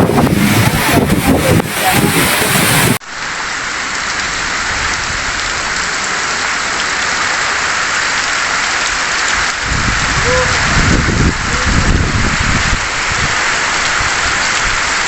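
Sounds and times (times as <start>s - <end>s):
wind buffeting microphone: 0.0s - 3.0s, 9.3s - 15.0s
heavy rain: 0.0s - 15.0s.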